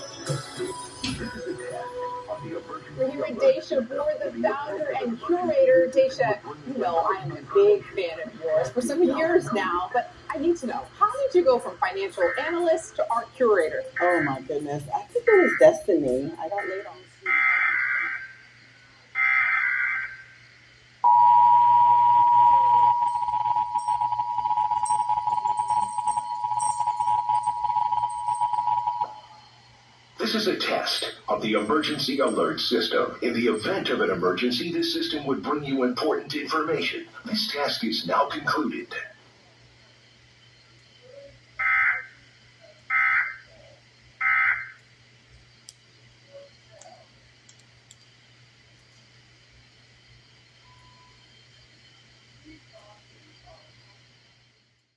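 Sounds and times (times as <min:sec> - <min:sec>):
digital data bursts: 0:00.0 - 0:18.5, 0:21.1 - 0:39.1
two-tone attention signal: 0:21.1 - 0:29.4.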